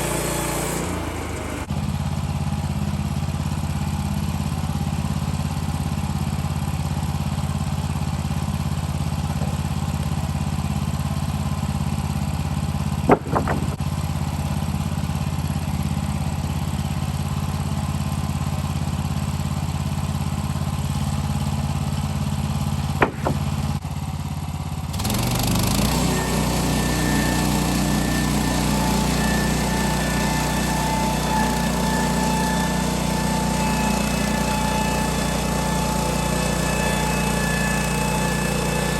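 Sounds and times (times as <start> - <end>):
saw ripping lumber: 0.0 - 2.4, 7.3 - 16.0, 20.9 - 24.2, 24.8 - 38.9
sawmill engine running: 0.0 - 38.9.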